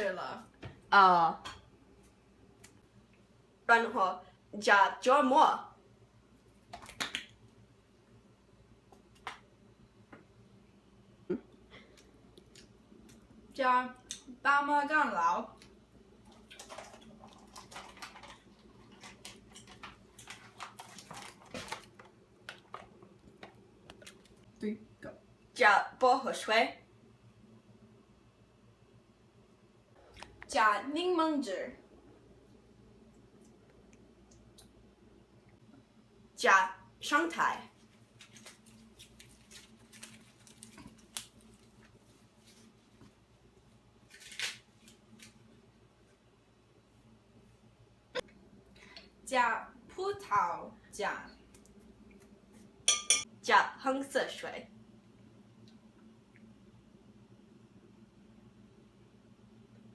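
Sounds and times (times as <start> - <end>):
ingredients clicking and rustling: 16.5 - 24.4
dishes and utensils clinking: 52.9 - 53.3.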